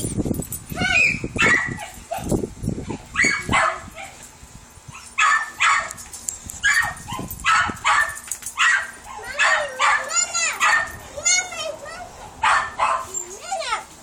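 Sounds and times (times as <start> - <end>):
dog whining and yipping: 0.9 - 2.3, 2.9 - 4.2, 6.6 - 11.2.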